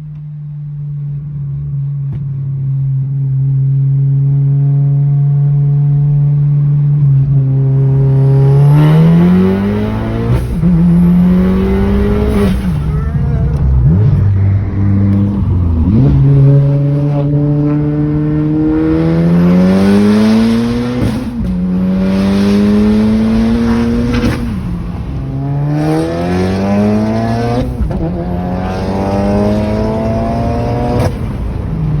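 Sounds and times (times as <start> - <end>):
car engine accelerating through gears: 3.8 - 32.0.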